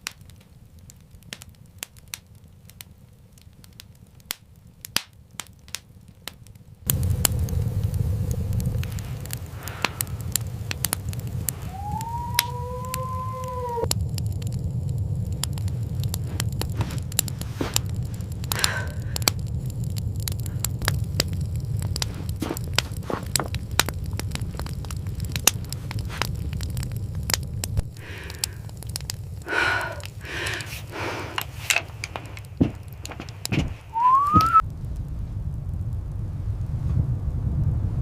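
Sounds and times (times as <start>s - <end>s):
fire crackling and popping: 0.0s - 38.0s
low rumble: 6.8s - 38.0s
animal-like cries: 11.6s - 13.9s.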